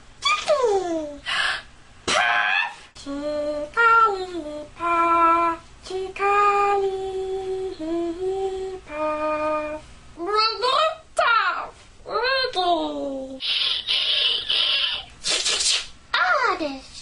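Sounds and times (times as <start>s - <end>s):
woman imitating creature cries: 2.1s - 2.8s.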